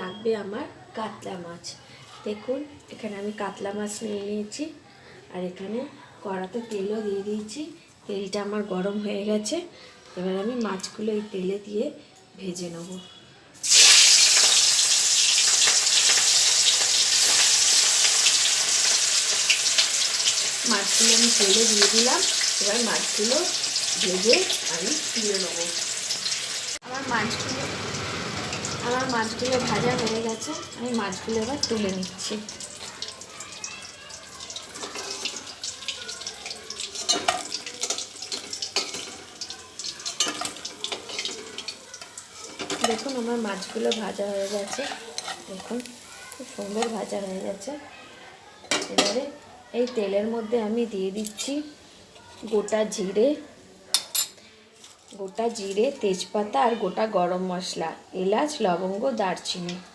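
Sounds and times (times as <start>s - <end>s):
fish sizzling in hot oil: 13.6s - 47.8s.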